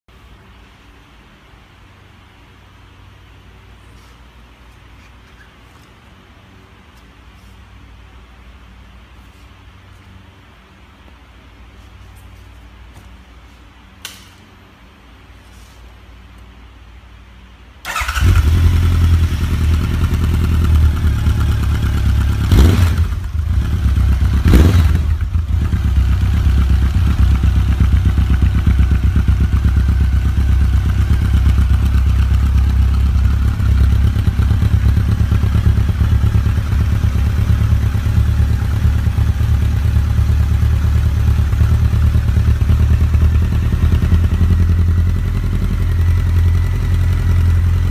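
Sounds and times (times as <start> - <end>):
motorcycle engine revving and idling: 17.9 - 47.9.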